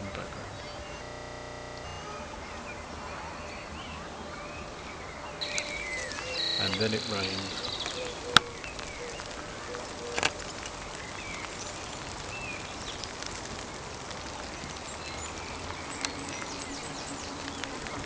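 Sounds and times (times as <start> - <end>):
short bird calls: 0.0 - 10.4
rain falling: 0.0 - 18.0
faint clicks: 5.4 - 18.0.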